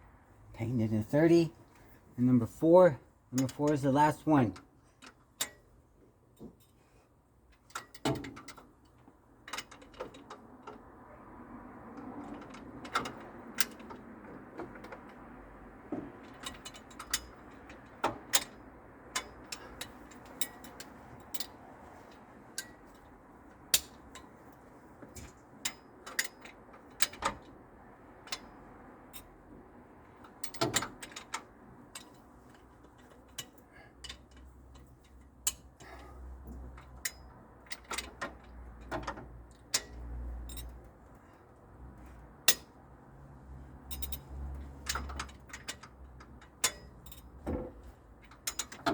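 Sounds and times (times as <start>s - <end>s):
wrench clicking on metal bolts: 3.4s - 5.6s, 16.2s - 21.5s, 43.8s - 48.9s.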